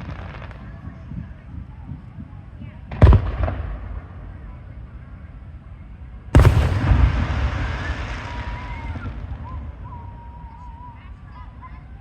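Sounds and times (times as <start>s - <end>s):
firework burst rumble and echo: 0.0s - 4.5s, 6.3s - 11.3s.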